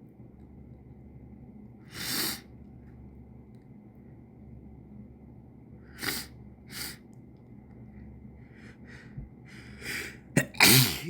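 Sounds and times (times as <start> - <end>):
person sniffing sharply: 1.9 - 2.5, 5.9 - 7.0.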